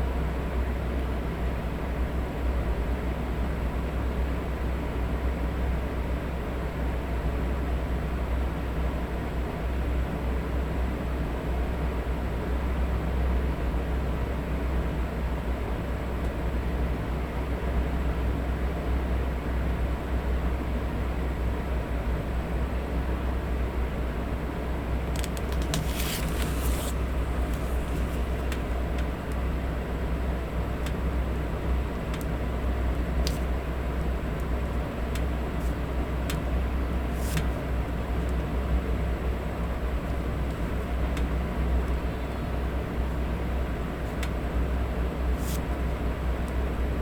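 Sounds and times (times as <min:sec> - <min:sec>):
electric fan: 0:00.0 - 0:47.0
paper rustling: 0:25.1 - 0:28.8, 0:37.1 - 0:37.6, 0:45.4 - 0:45.7.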